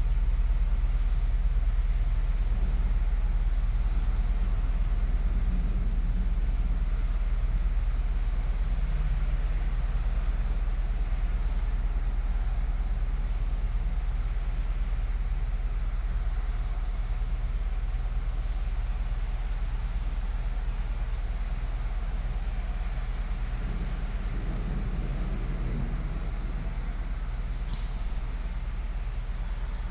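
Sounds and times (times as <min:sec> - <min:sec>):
steady low rumble: 0:00.0 - 0:29.9.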